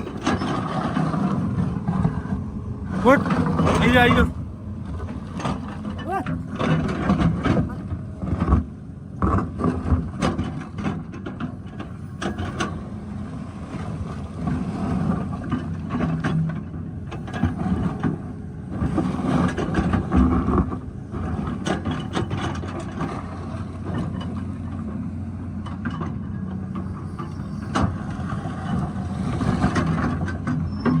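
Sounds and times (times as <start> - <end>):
excavator engine under load: 0.0 - 31.0.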